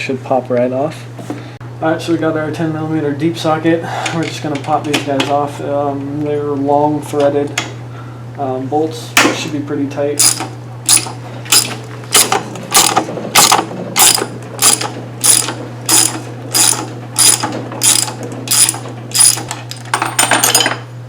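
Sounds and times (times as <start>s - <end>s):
hand ratchet clicking: 10.2s - 19.8s.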